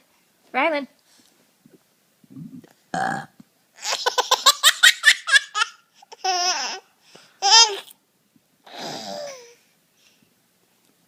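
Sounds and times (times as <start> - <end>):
baby laughing: 3.8 - 7.9.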